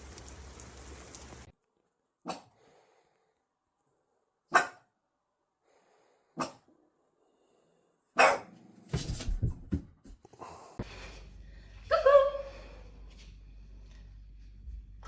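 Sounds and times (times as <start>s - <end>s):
dog barking: 2.2s - 2.5s, 4.5s - 4.9s, 6.4s - 6.7s, 8.1s - 8.6s.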